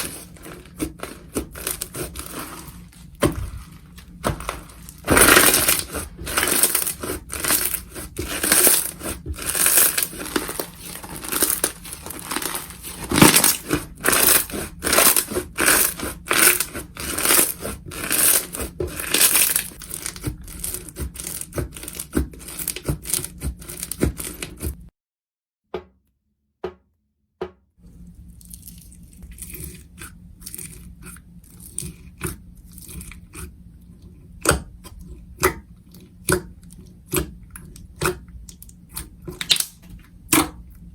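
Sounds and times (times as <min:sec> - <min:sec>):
slime crackling and popping: 0:04.2 - 0:24.4, 0:38.0 - 0:40.5.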